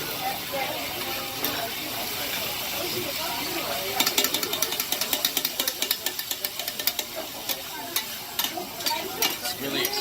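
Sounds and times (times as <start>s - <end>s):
food sizzling on a griddle: 0.0s - 10.0s
metal spatulas scraping and clicking: 3.9s - 10.0s.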